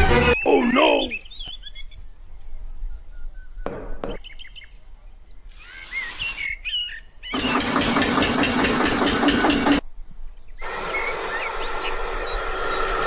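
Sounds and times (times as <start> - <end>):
birds chirping: 0.0 - 8.0, 10.3 - 13.0
small engine knocking: 7.4 - 9.8.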